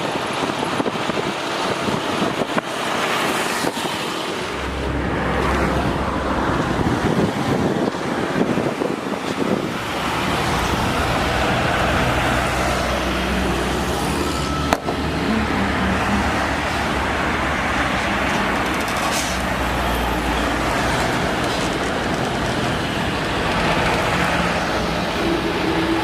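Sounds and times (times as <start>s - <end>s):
diesel truck engine droning: 0.0s - 26.0s
road noise: 0.0s - 26.0s.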